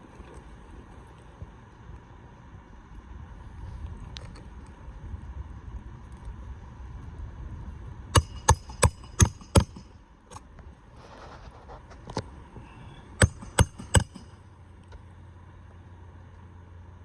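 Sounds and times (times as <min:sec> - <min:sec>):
hammer striking nails: 0:08.2 - 0:09.9, 0:13.2 - 0:14.4.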